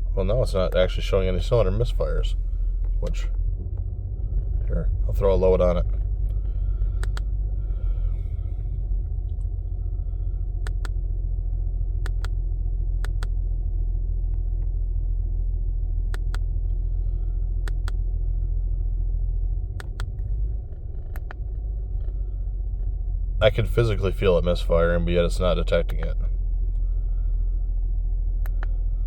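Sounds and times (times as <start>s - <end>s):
car engine idling: 0.0s - 29.0s
sharp clicks: 5.8s - 7.3s, 10.6s - 11.0s, 12.0s - 12.4s, 13.0s - 13.4s, 16.1s - 16.5s, 17.7s - 18.0s, 19.8s - 20.3s, 21.0s - 21.5s, 28.4s - 28.8s.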